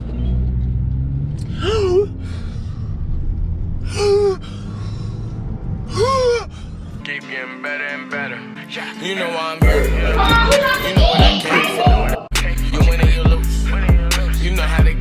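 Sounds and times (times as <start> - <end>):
low bass drone: 0.0 - 7.1, 9.6 - 15.0
breathy gasp-like vocal sounds: 1.5 - 3.1, 3.9 - 7.0.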